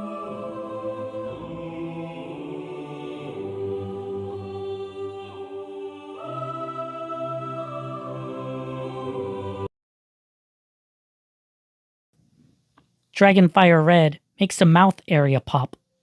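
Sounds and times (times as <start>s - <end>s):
choir-like sustained chords: 0.0s - 9.7s.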